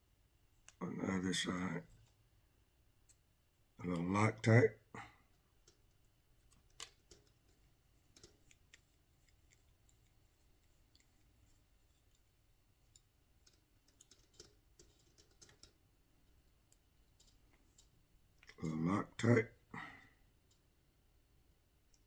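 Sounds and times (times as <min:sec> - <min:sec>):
faint clicks of small hardware: 0:05.3 - 0:18.6.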